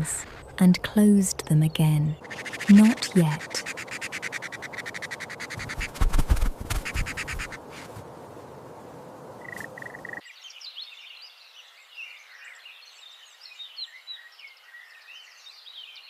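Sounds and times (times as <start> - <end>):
small birds chirping: 0.0 - 7.9, 9.4 - 16.0
short rushing noise: 3.6 - 8.0.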